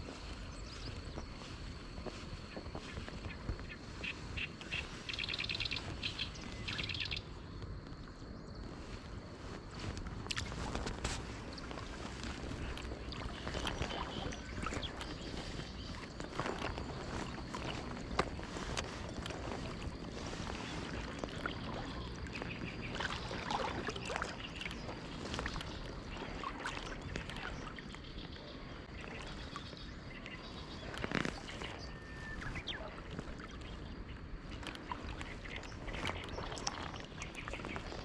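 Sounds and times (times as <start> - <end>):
water washing: 8.8 - 27.9, 32.4 - 38.0.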